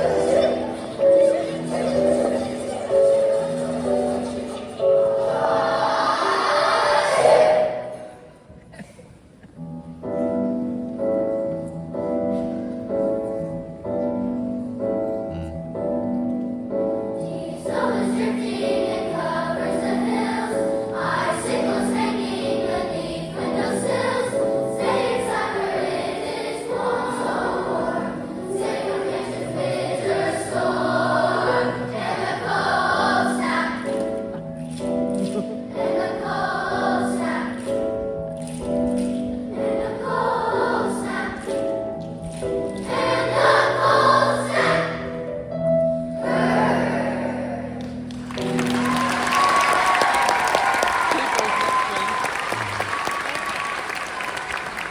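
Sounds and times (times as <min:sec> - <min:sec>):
choir singing: 0:00.0 - 0:08.4, 0:17.2 - 0:34.4, 0:35.7 - 0:37.9, 0:39.6 - 0:41.9, 0:42.7 - 0:45.3, 0:46.1 - 0:47.8.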